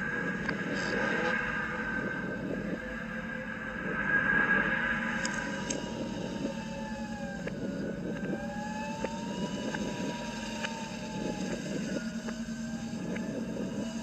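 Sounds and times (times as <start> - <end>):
reversed film soundtrack: 0.0 - 14.0.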